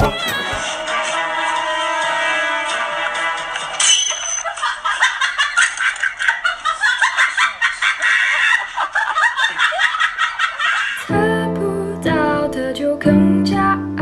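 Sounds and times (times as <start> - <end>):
high-pitched laughter-like bursts: 6.8 - 11.0.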